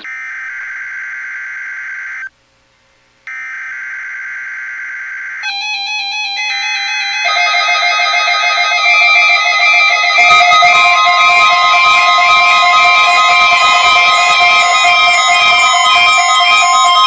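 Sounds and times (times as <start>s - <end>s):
steady electronic tone: 5.4s - 17.0s.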